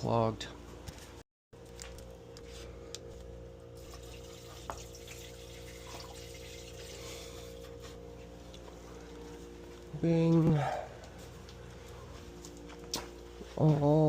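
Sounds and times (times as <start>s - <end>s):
steady low hum: 0.0s - 14.0s
water trickling into drain: 3.8s - 7.1s.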